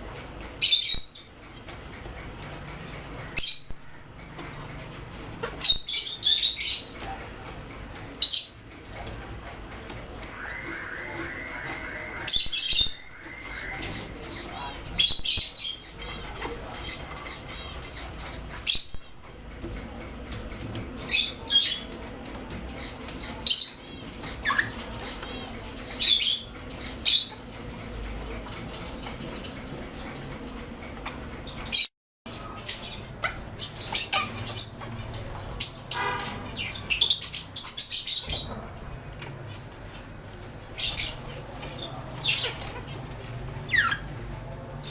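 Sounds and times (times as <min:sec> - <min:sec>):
parrots squawking and chirping: 0:05.4 - 0:07.0, 0:08.2 - 0:19.0, 0:22.8 - 0:27.4, 0:32.7 - 0:38.6, 0:40.8 - 0:43.1, 0:43.7 - 0:44.2
parrot whistle: 0:10.3 - 0:14.1.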